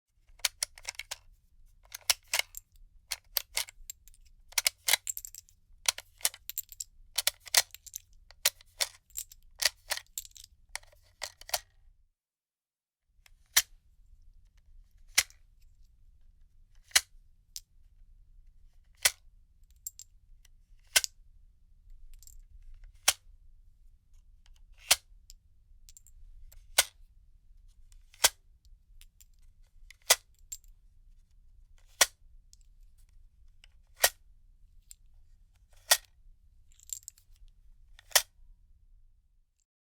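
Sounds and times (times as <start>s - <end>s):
metal clicking of cartridges: 1.9s - 11.7s, 36.8s - 37.3s.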